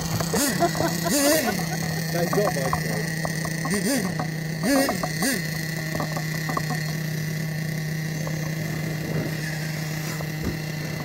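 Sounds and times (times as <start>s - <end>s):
motor humming steadily: 0.0s - 11.0s
faint ticks: 0.1s - 7.3s.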